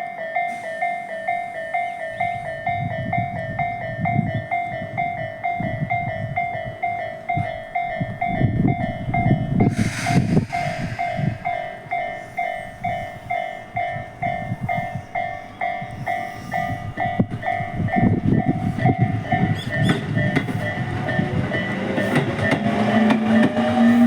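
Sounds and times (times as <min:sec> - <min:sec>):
level crossing alarm bell: 0:00.0 - 0:09.7, 0:10.6 - 0:24.0
train wheels rumbling: 0:00.0 - 0:24.0.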